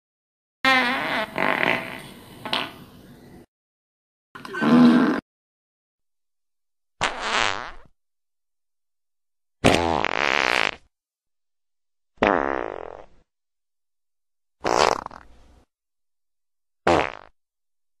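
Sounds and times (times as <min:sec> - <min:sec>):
fart sound effects: 0:00.7 - 0:02.8, 0:04.5 - 0:05.2, 0:07.0 - 0:07.9, 0:09.6 - 0:10.9, 0:12.2 - 0:13.2, 0:14.6 - 0:15.3, 0:16.8 - 0:17.4.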